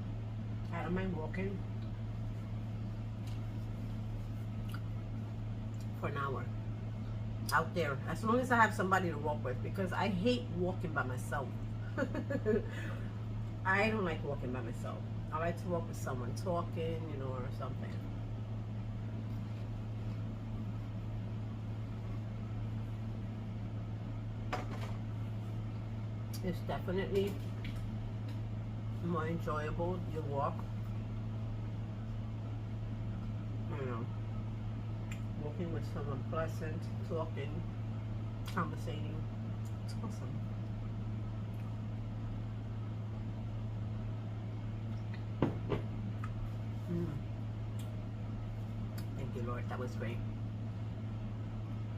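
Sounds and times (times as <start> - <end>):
steady low hum: 0.0 - 51.9.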